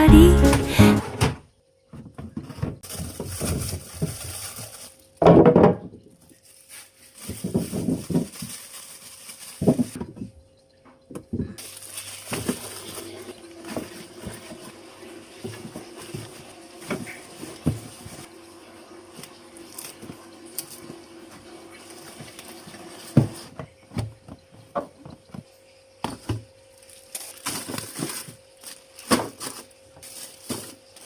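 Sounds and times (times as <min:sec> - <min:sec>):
song playing: 0:00.0 - 0:01.3
packaging rustling: 0:02.8 - 0:05.2, 0:06.2 - 0:10.0, 0:11.6 - 0:14.7, 0:26.8 - 0:31.0.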